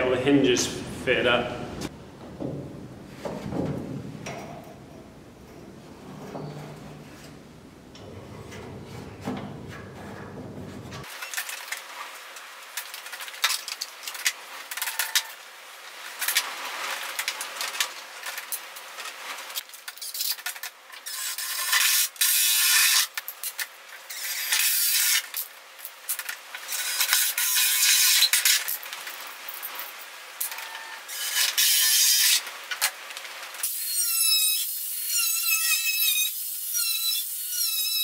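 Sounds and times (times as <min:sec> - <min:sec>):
power tool cutting fibreglass: 0:21.0 - 0:23.1, 0:24.1 - 0:25.3, 0:33.6 - 0:38.0.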